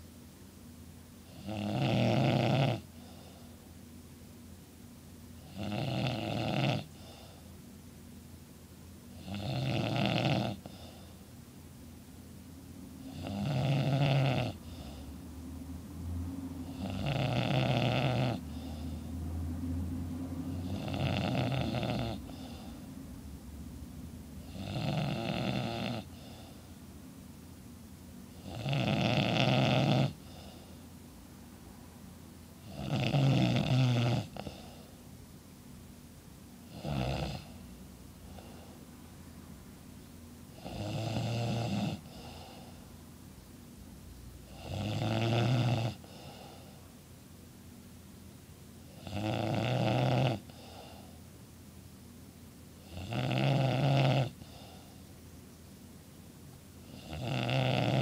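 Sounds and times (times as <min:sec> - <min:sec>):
man snoring loudly: 0:01.3 - 0:02.9, 0:05.5 - 0:07.0, 0:09.2 - 0:10.8, 0:13.0 - 0:15.0, 0:16.6 - 0:19.0, 0:20.5 - 0:22.7, 0:24.4 - 0:26.4, 0:28.4 - 0:30.5, 0:32.6 - 0:34.8, 0:36.7 - 0:37.6, 0:40.6 - 0:42.7, 0:44.5 - 0:46.6, 0:49.0 - 0:51.0, 0:52.8 - 0:54.9, 0:56.9 - 0:58.0.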